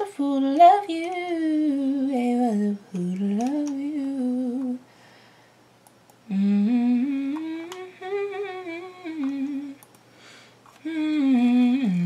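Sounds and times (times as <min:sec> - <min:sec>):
woman humming a melody: 0:06.3 - 0:09.8, 0:10.8 - 0:12.0.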